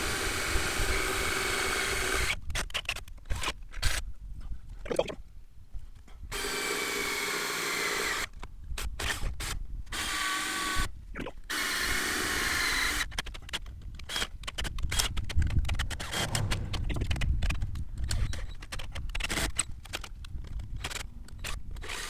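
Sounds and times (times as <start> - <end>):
power drill whining: 0.0 - 2.4, 6.3 - 8.3, 9.9 - 10.9, 11.5 - 13.2, 21.8 - 22.0.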